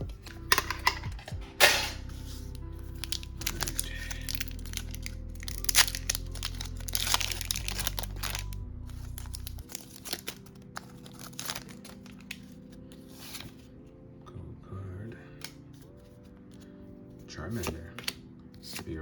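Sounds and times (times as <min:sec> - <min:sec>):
background music: 0:00.0 - 0:19.0
foil wrapper crinkling and tearing: 0:02.8 - 0:13.5.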